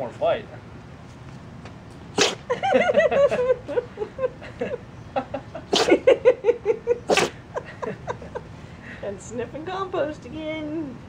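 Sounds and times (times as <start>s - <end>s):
puppy sneezing: 2.1s - 2.6s, 5.6s - 6.2s, 7.0s - 7.4s
people laughing: 2.5s - 8.6s.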